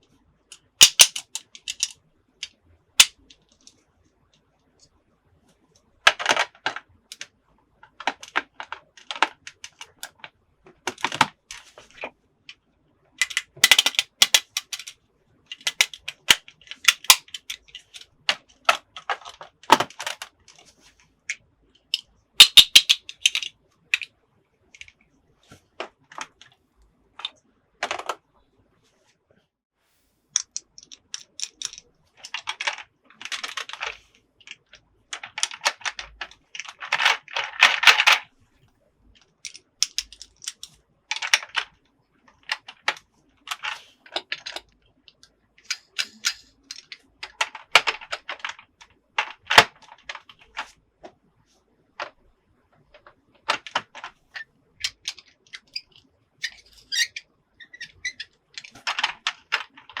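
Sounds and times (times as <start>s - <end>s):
plastic toy pieces clicking: 0.5s - 3.8s, 6.1s - 7.3s, 7.9s - 10.3s, 13.2s - 20.6s, 21.9s - 24.1s, 30.4s - 38.2s, 39.2s - 41.8s, 42.4s - 50.7s, 54.8s - 60.0s.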